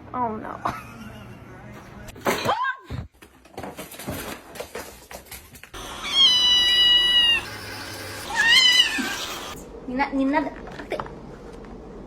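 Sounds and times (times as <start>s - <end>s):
cat meowing: 5.9s - 7.6s, 8.2s - 9.6s.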